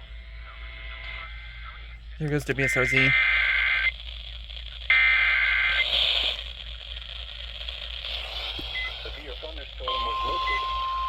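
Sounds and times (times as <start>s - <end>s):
radio hiss: 0.0s - 11.0s
harsh warbling data burst: 2.5s - 10.8s.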